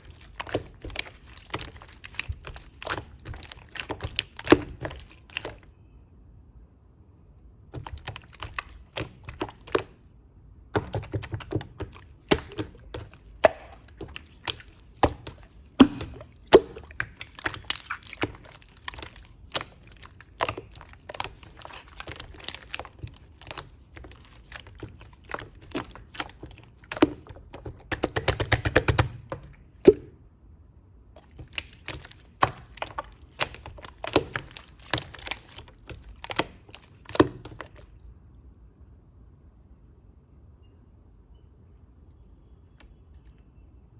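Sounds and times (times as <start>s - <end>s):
slime squished by hand: 0.0s - 5.8s, 7.7s - 10.1s, 10.7s - 30.2s, 31.2s - 38.1s.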